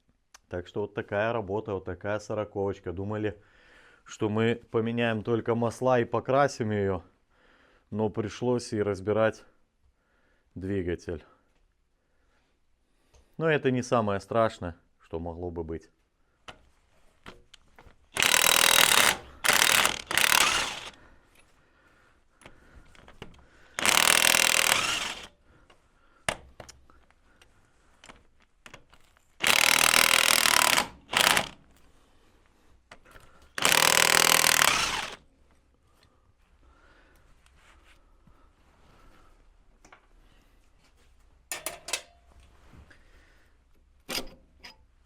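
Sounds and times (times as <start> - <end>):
pneumatic impact wrench bursts: 18.2 - 21.0, 22.9 - 25.4, 29.4 - 31.7, 33.5 - 35.2.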